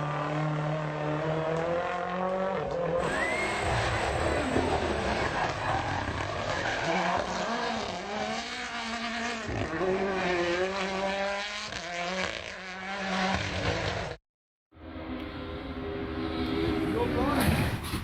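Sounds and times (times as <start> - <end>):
rally car engine revving: 0.0 - 14.2
tyre and road noise: 0.0 - 14.2.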